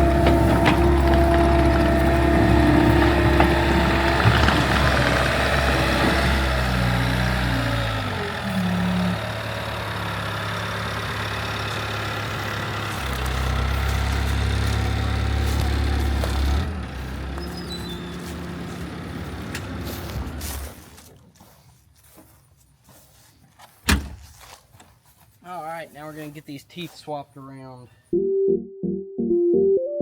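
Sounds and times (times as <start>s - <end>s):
diesel engine running: 0.0s - 21.6s.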